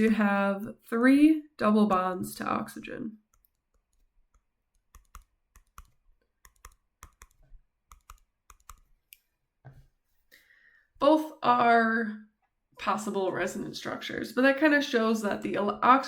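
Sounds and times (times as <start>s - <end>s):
faint irregular clicks: 3.2s - 9.8s.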